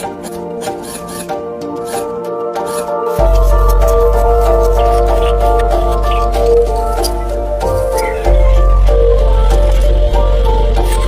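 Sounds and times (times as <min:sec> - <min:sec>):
calm melodic background music: 0:00.0 - 0:11.0
loud deep drone: 0:03.2 - 0:11.0.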